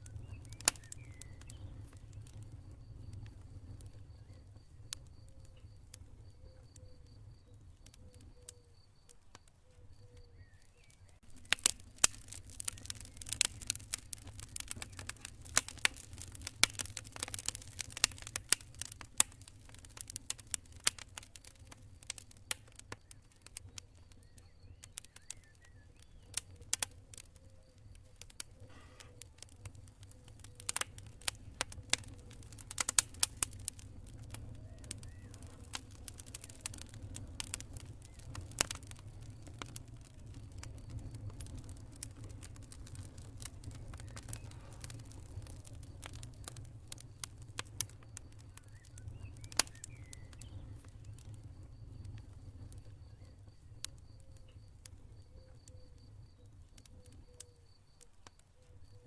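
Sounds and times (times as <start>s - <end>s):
crickets chirping: 0.0s - 17.3s, 20.3s - 59.0s
campfire crackling and popping: 0.0s - 59.0s.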